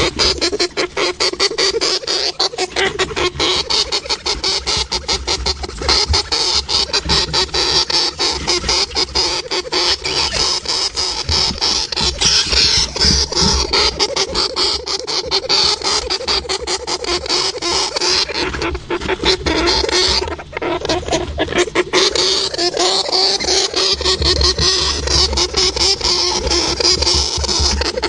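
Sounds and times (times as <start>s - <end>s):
hamster clicking and scratching: 0.0s - 28.0s.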